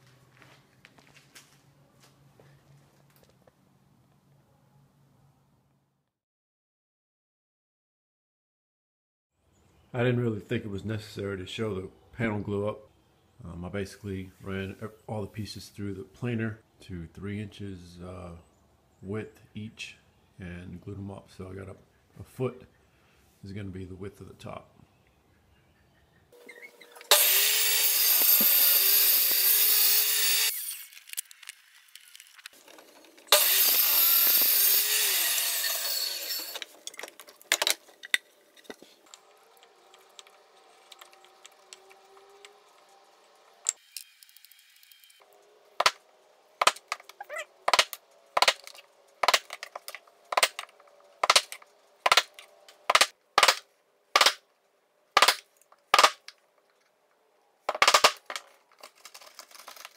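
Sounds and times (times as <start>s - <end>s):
power tool cutting wood: 26.4s - 31.2s, 33.3s - 36.7s, 39.0s - 46.0s.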